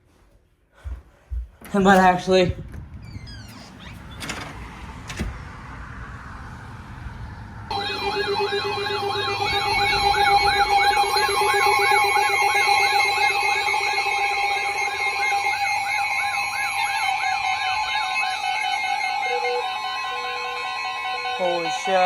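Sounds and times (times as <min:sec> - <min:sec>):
steady low tone: 0:05.7 - 0:21.6
electronic warbling siren: 0:05.8 - 0:22.0.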